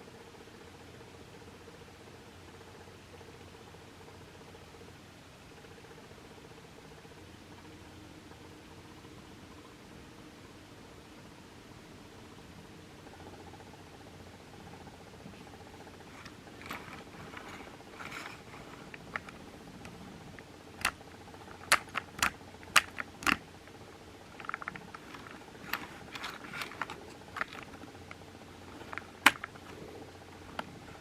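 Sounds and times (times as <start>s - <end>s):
faint steady hum: 0.0s - 31.0s
rustling: 15.3s - 23.4s, 24.2s - 31.0s
clicks and knocks of small objects: 16.1s - 23.4s, 24.3s - 29.8s.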